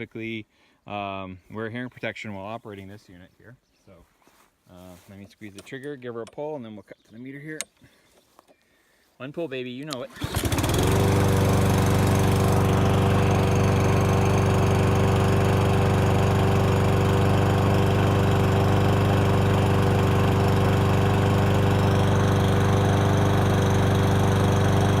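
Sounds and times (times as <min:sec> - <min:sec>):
lawn mower engine running: 0:09.9 - 0:25.0
mower blade whooshing: 0:10.1 - 0:25.0.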